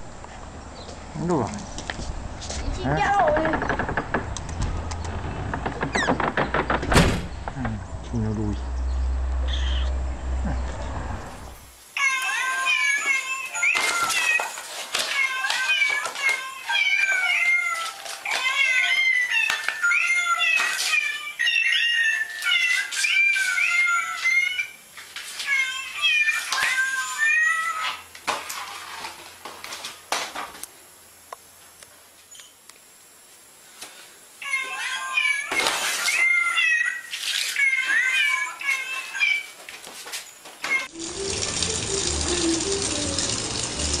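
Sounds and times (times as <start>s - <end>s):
cats meowing: 9.4s - 10.0s, 12.0s - 28.1s, 34.4s - 39.6s, 40.6s - 40.9s.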